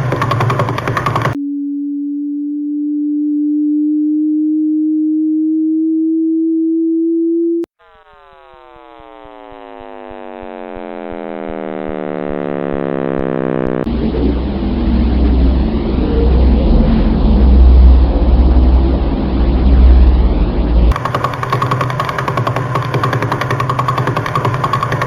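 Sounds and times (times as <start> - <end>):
loud rumbling noise: 0.0 - 1.4, 10.8 - 25.0
pure synthetic tone: 0.0 - 25.0
tone gliding down in pitch: 1.4 - 25.0.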